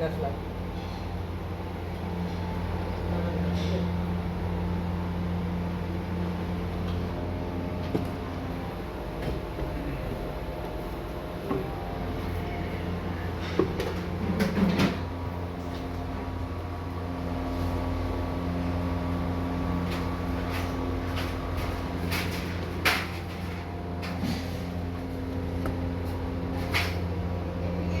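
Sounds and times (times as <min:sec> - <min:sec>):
machine hum: 0:00.0 - 0:28.0.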